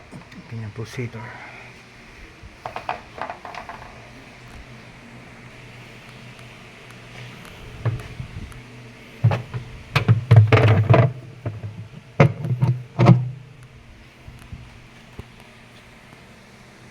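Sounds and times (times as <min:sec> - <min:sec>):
sharp knocks and clatters: 0:02.6 - 0:04.6, 0:06.5 - 0:13.7.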